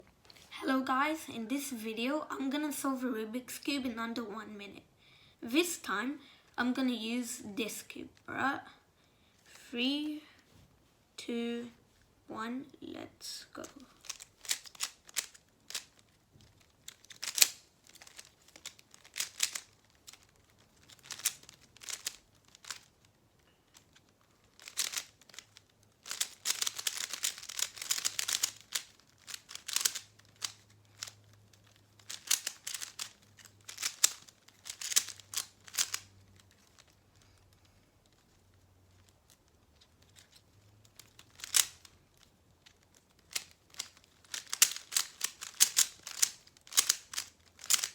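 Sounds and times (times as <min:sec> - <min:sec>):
puzzle cube clicking as layers turn: 0:13.6 - 0:47.9.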